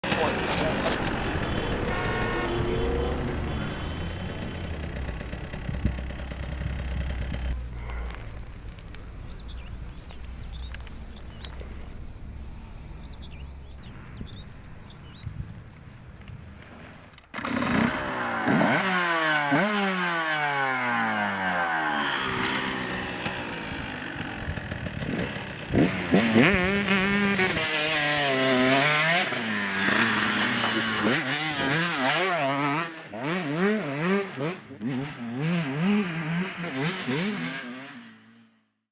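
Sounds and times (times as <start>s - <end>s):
dirt bike engine revving: 0.0s - 8.3s, 17.4s - 38.4s
faint birdsong: 1.3s - 17.2s.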